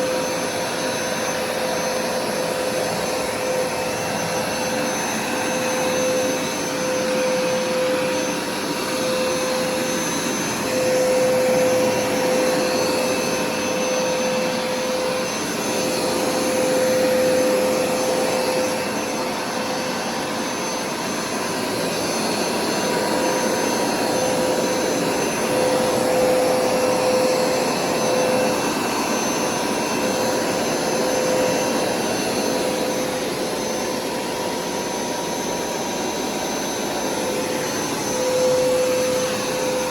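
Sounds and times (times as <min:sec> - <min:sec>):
carpet cleaner motor running: 0:00.0 - 0:39.9.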